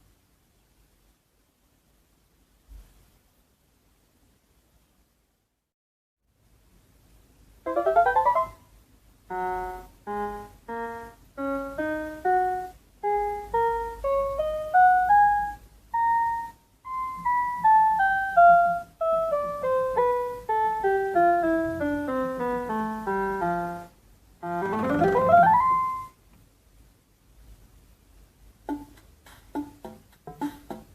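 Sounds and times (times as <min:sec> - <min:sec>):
electronic keyboard playing: 0:07.7 - 0:08.6, 0:09.3 - 0:26.2.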